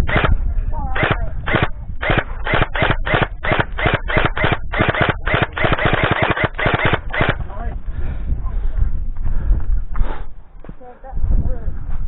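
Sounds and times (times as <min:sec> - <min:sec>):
gel blaster firing: 0:00.0 - 0:07.5.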